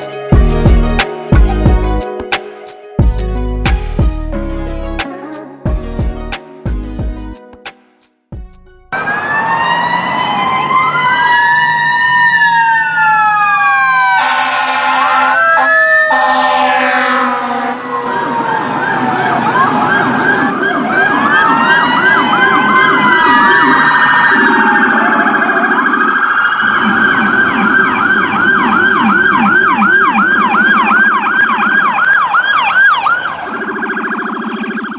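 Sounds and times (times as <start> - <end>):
low siren warble: 8.9 - 34.9
siren wailing: 8.9 - 34.9
siren yelp: 8.9 - 34.9.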